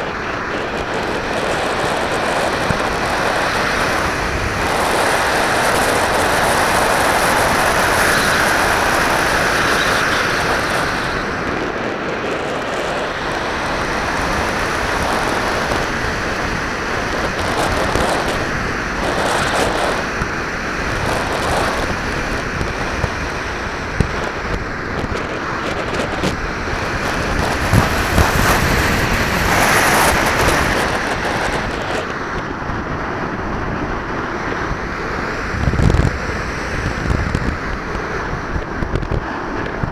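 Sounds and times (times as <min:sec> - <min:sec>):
wind rushing over microphone: 0:00.0 - 0:39.9.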